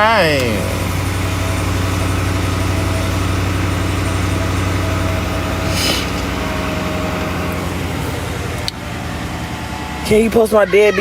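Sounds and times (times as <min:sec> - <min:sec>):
vehicle engine idling: 0:00.0 - 0:11.0
short hiss: 0:05.6 - 0:06.3.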